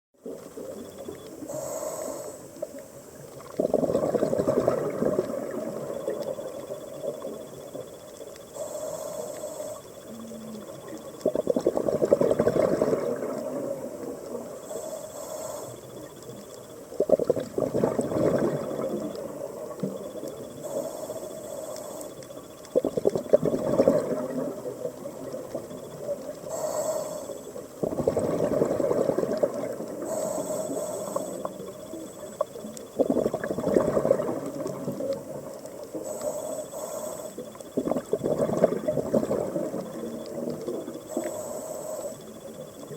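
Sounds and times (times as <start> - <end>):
diver inhaling through regulator: 1.5 - 2.6, 8.5 - 10.6, 14.6 - 16.0, 20.4 - 22.9, 26.4 - 31.8, 36.0 - 40.2, 41.0 - 42.5
exhaled bubbles gushing: 2.7 - 7.9, 10.1 - 14.6, 15.8 - 20.8, 22.6 - 26.5, 27.4 - 30.4, 31.0 - 36.2, 37.5 - 41.5.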